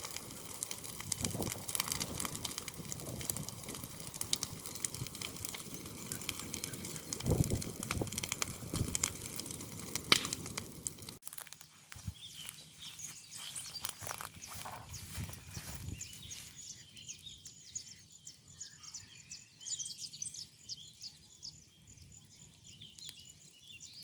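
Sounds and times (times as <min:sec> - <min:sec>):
scattered ticks: 0:00.0 - 0:11.2
burning hay crackling: 0:00.0 - 0:17.9.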